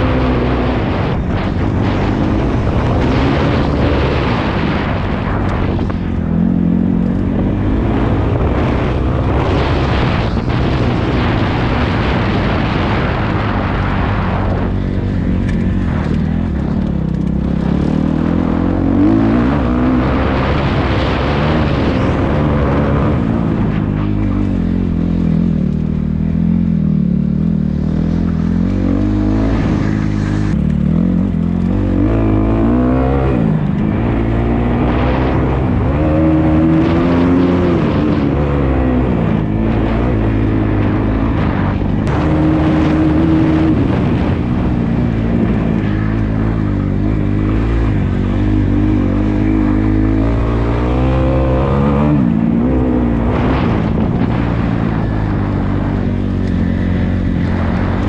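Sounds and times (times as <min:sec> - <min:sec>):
dirt bike engine revving: 0:00.0 - 0:58.0.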